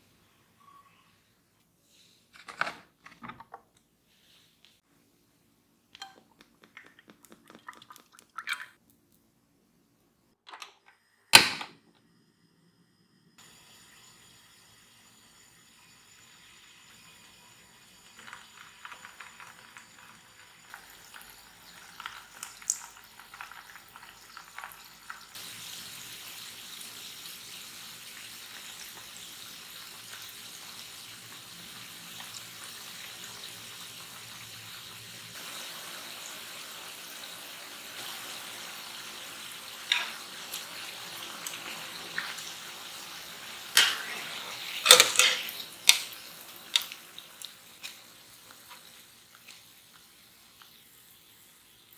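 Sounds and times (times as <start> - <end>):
food sizzling in oil: 13.4 - 51.9.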